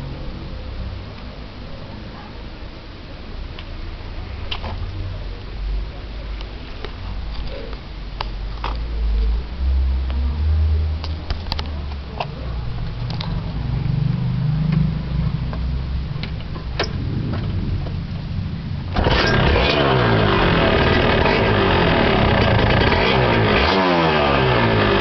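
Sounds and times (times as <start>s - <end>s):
motorcycle engine revving: 12.6s - 25.0s.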